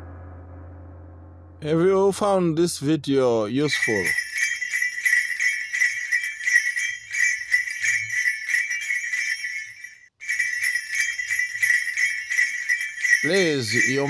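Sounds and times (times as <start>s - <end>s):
small bells jingling: 3.3s - 14.0s.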